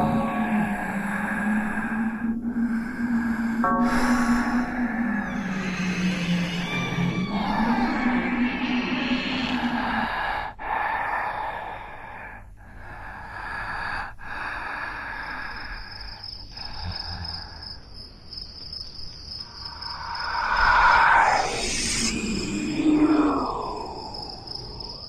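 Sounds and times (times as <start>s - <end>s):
steady high chirring: 0.0s - 10.6s, 19.4s - 25.0s
crickets chirping: 0.0s - 25.0s.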